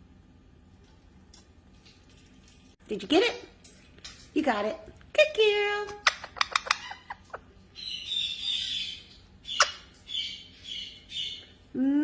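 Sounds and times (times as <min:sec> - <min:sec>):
parrot clicking: 0:05.9 - 0:07.4
parrot chattering calls: 0:06.0 - 0:11.4.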